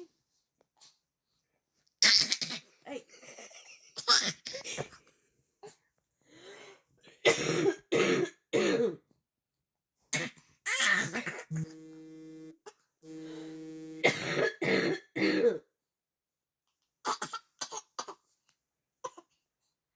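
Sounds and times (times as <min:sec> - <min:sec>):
person coughing: 0:07.3 - 0:09.0, 0:14.0 - 0:15.7
steady buzzing tone: 0:11.5 - 0:14.4.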